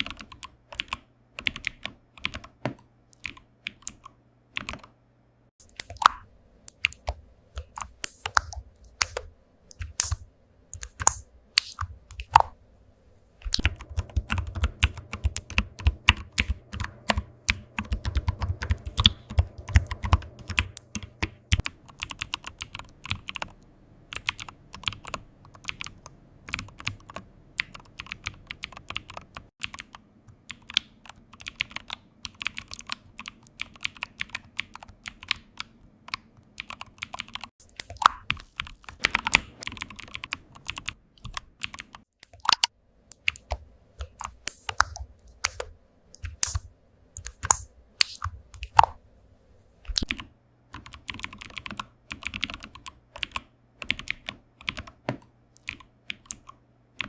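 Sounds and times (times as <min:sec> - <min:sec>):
typing on computer keyboard: 0:00.0 - 0:04.9, 0:05.7 - 0:12.5, 0:13.4 - 0:46.6, 0:49.9 - 0:56.6.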